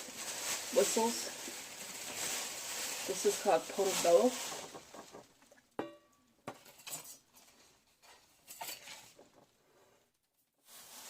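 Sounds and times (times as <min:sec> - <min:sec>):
packaging rustling: 0:00.0 - 0:05.6.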